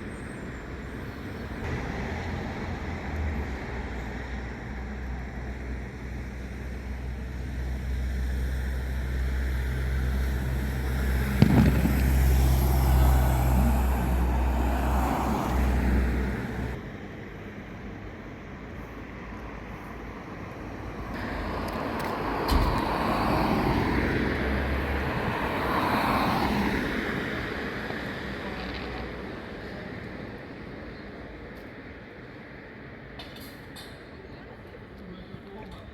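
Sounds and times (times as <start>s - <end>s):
passing vehicle road noise: 0.0s - 34.2s
low engine rumble: 0.2s - 16.8s.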